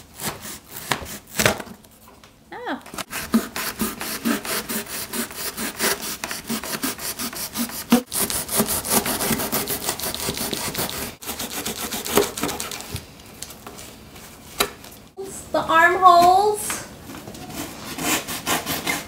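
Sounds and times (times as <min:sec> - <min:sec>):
knife sawing through cardboard: 0:00.1 - 0:01.4, 0:03.0 - 0:12.9, 0:17.5 - 0:19.0.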